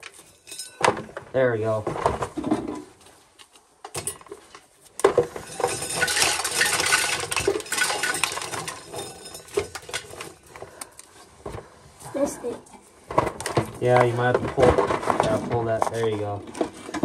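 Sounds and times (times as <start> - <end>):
corn kernels clattering: 5.0 - 10.8.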